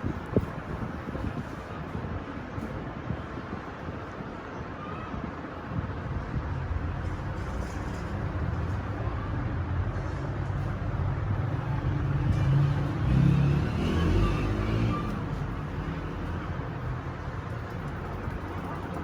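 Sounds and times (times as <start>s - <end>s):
road traffic rumble: 0.0s - 19.0s
vehicle engine: 6.5s - 19.0s.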